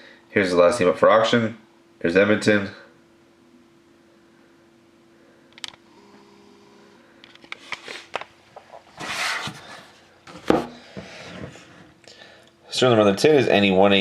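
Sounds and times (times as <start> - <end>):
faint steady hum: 0.0 - 14.0
rustling scrape of cards: 8.9 - 10.0.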